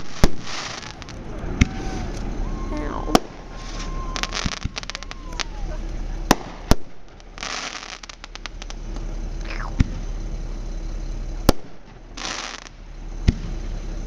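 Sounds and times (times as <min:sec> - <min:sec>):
falling firework whistle: 0:00.0 - 0:09.0
firework bangs: 0:00.0 - 0:10.3, 0:10.9 - 0:14.0
firework crackling: 0:00.0 - 0:14.0.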